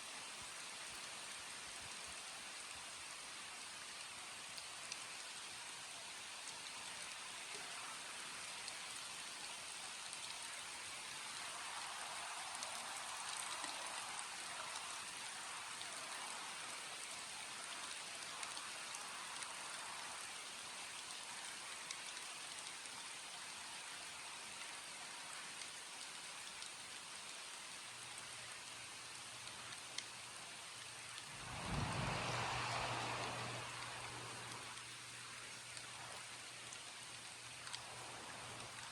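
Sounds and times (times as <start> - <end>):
raindrops ticking on surfaces: 0.0 - 38.9
steady rain hiss: 0.0 - 38.9.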